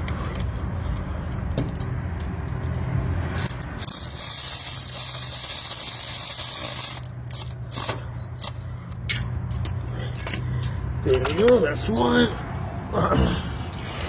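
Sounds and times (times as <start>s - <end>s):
electric ratchet wrench whirring: 3.4s - 8.7s.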